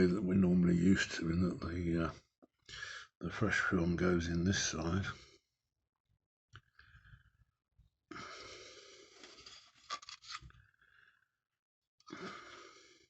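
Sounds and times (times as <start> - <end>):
camera handling rustle: 9.3 - 10.6.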